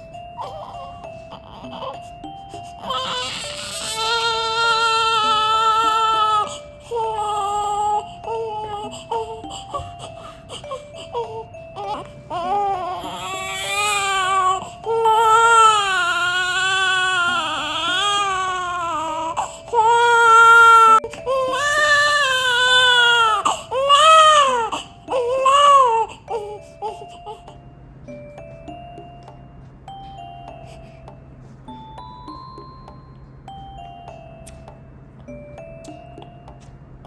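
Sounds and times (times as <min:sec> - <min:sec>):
newborn baby crying: 0:00.4 - 0:27.6.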